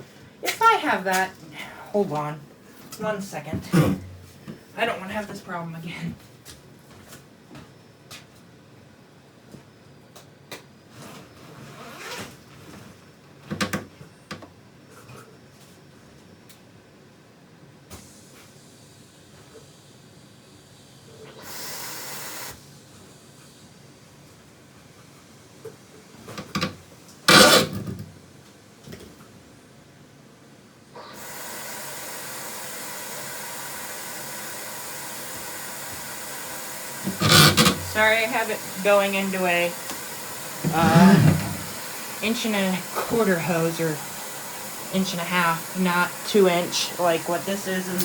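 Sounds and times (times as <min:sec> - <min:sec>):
vacuum suction through hose: 0:35.9 - 0:48.0.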